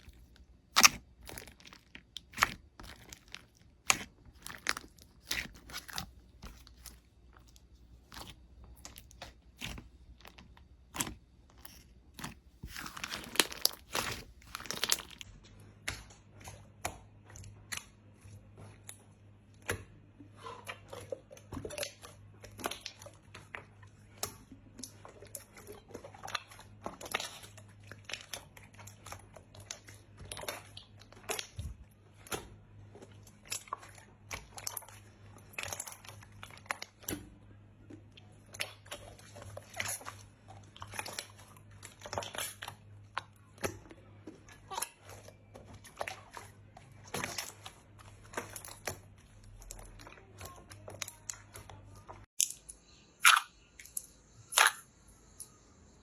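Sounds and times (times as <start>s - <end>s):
slime crackling and popping: 0.2s - 15.3s.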